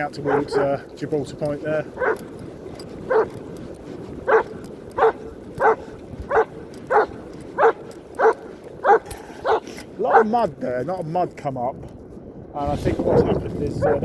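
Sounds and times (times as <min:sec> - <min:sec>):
dog barking: 0:00.2 - 0:00.8, 0:02.0 - 0:02.3, 0:03.1 - 0:03.4, 0:04.2 - 0:10.3, 0:13.8 - 0:14.0.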